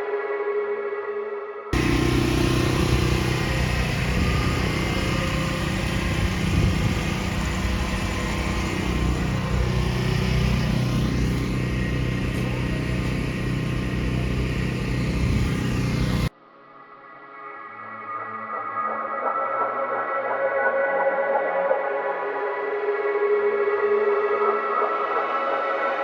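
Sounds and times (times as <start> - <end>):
engine humming steadily: 1.8 - 16.3.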